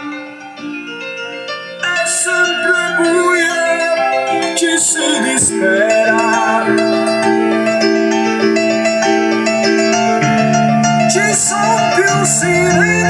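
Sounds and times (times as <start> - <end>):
bell-like mallet tones: 0.0 - 13.0
keyboard chords: 0.0 - 13.0
bass line: 5.4 - 13.0.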